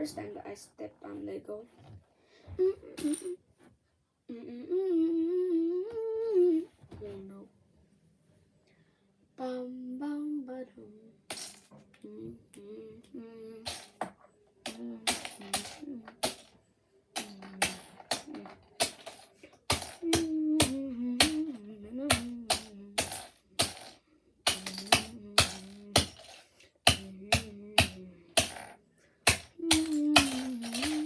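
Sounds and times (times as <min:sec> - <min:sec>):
child humming: 0:02.6 - 0:03.4, 0:04.3 - 0:06.7, 0:12.1 - 0:13.6, 0:20.0 - 0:23.0.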